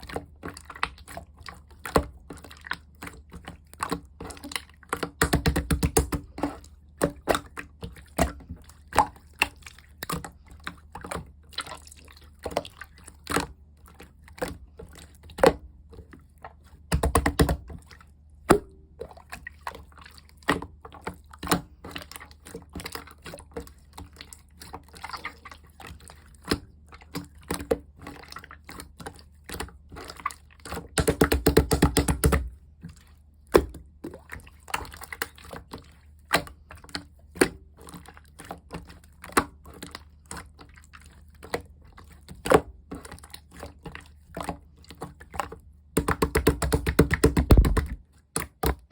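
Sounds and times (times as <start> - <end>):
slime squished by hand: 46.0 - 48.9.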